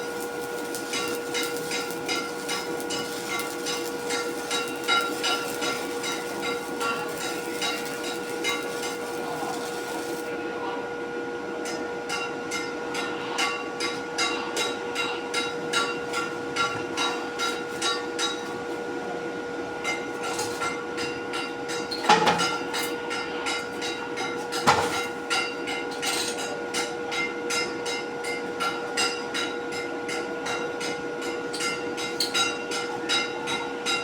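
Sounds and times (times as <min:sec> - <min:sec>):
machine humming: 0:00.0 - 0:10.6.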